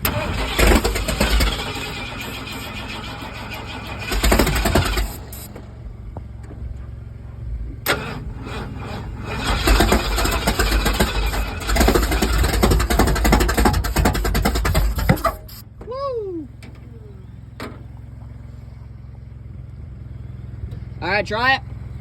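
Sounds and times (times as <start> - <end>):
truck engine starter cranking: 0.0 - 5.8, 7.7 - 15.7.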